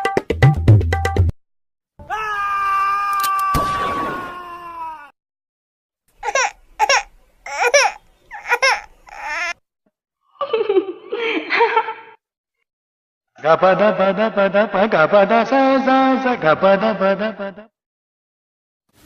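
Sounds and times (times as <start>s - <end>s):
person laughing: 10.4s - 12.2s.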